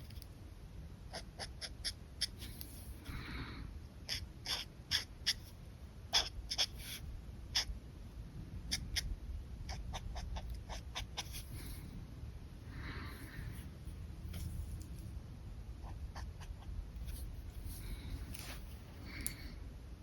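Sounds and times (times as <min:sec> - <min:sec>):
marker stroke scratching paper: 0:01.1 - 0:02.9, 0:04.1 - 0:05.5, 0:06.1 - 0:07.0, 0:09.7 - 0:11.8, 0:15.8 - 0:18.7.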